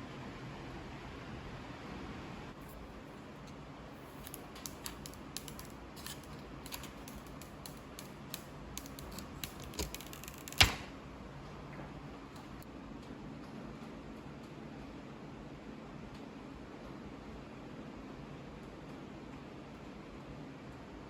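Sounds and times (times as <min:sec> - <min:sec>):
phone being handled: 0:04.0 - 0:10.9.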